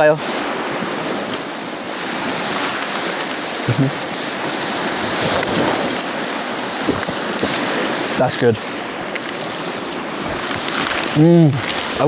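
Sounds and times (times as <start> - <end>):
lake water lapping: 0.0 - 12.0
wind: 0.0 - 12.0.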